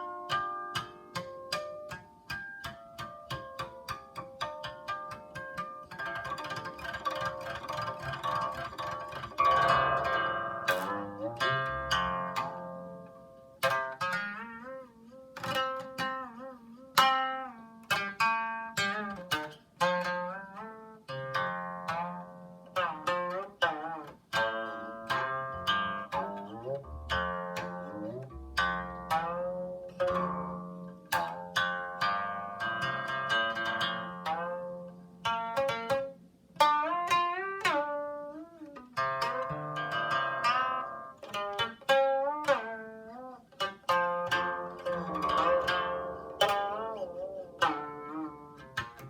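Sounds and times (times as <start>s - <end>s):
plucked zither music: 0.0s - 49.0s.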